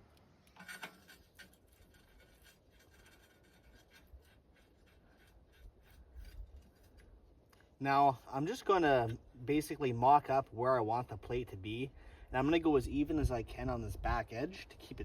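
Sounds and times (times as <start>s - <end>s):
faint scrapes: 0.5s - 7.4s.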